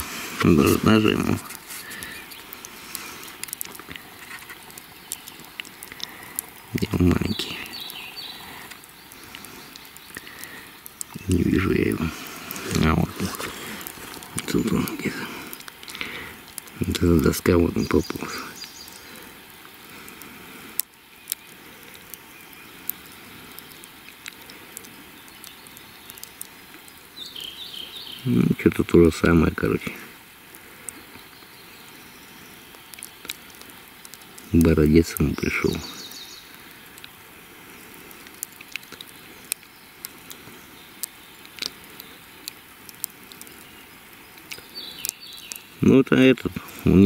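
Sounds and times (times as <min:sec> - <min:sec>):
sharp clicks and pops: 0:00.0 - 0:27.5, 0:32.7 - 0:47.0
outdoor background hiss: 0:00.0 - 0:47.0.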